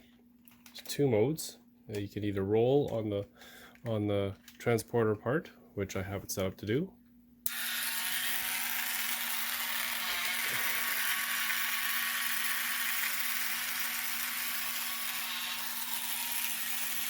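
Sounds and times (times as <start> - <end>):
toy electric motor whirring: 7.5 - 17.0.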